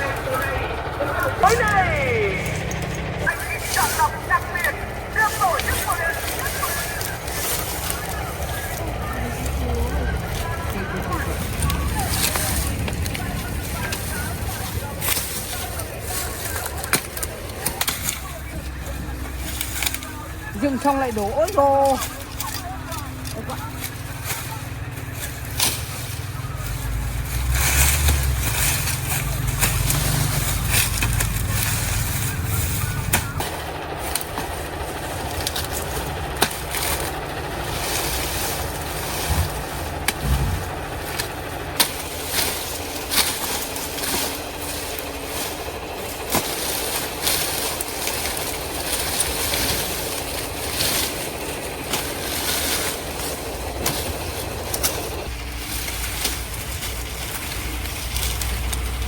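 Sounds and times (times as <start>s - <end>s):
low rumble: 0.0s - 20.6s, 37.4s - 42.7s
dry leaves and stalks rustling: 0.0s - 59.0s.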